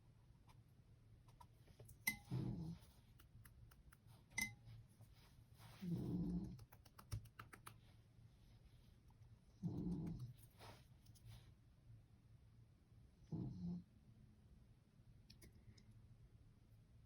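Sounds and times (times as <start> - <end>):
dog snoring: 5.8 - 6.6, 9.6 - 10.3, 13.3 - 13.8
sharp little taps and clicks: 6.5 - 7.8.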